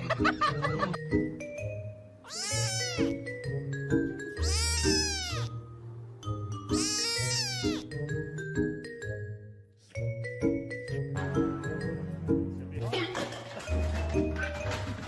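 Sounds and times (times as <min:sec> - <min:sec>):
light mallet music: 0:00.0 - 0:15.0
cat meowing: 0:02.2 - 0:03.3, 0:04.4 - 0:05.6, 0:06.7 - 0:07.9.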